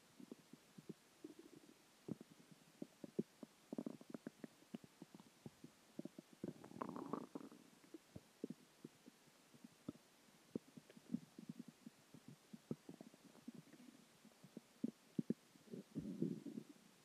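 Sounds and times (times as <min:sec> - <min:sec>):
stomach gurgling: 0:00.0 - 0:17.0.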